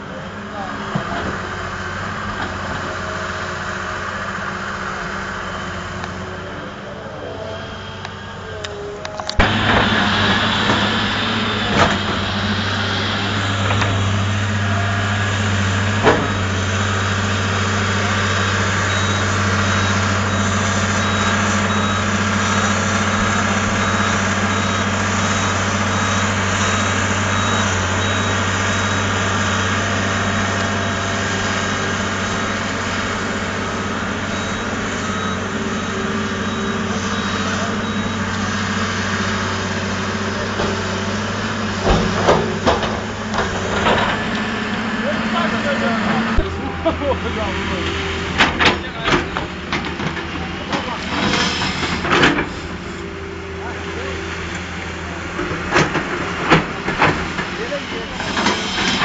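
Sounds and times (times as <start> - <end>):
construction machine engine running: 0.0 - 59.0
faint high beep: 18.9 - 29.1, 34.3 - 38.3.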